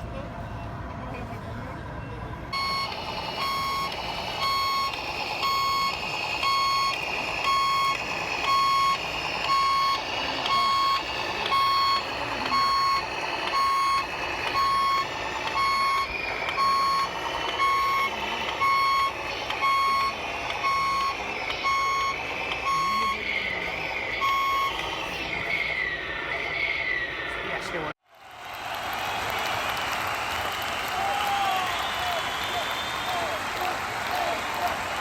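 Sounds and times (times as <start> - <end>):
reversing alarm beeping: 2.5 - 26.9.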